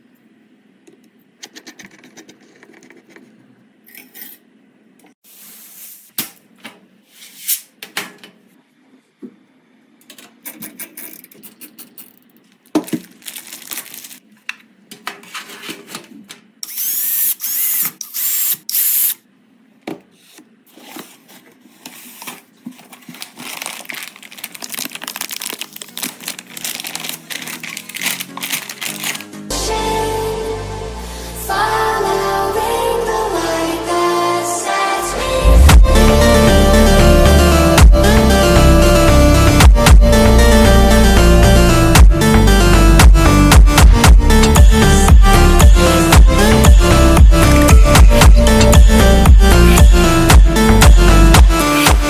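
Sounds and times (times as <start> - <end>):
power screwdriver whirring: 16.6 - 19.2.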